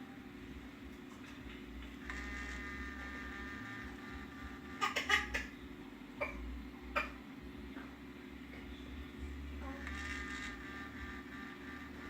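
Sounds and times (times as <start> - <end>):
motor grinding hum: 1.5 - 5.5, 9.3 - 12.0
ringing tone: 9.7 - 12.0.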